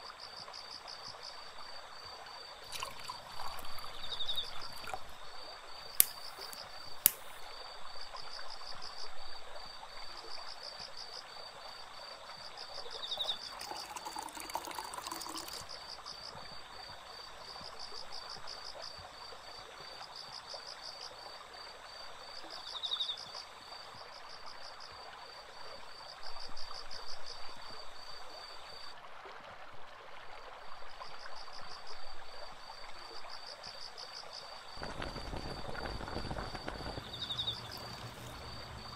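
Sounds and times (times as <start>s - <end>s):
stream water flowing: 0.0s - 22.6s, 25.0s - 38.9s
insects chirring: 0.2s - 28.9s, 32.7s - 38.9s
sharp clicks: 6.0s - 7.4s.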